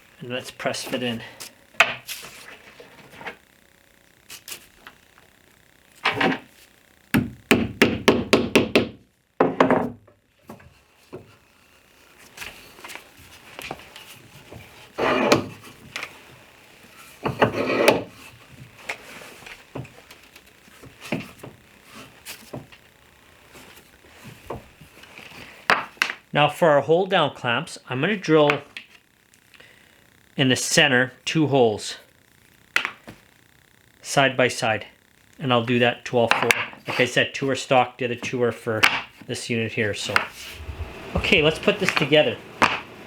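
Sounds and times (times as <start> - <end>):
wooden clunks and knocks: 7.2 - 10.6
scraping grinding sounds: 15.0 - 15.4, 17.4 - 18.1.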